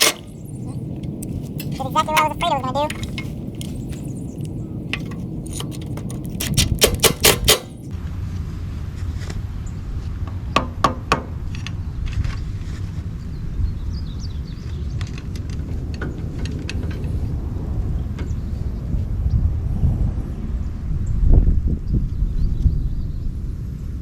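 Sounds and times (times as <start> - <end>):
metal tools clinking: 0.0 - 7.8.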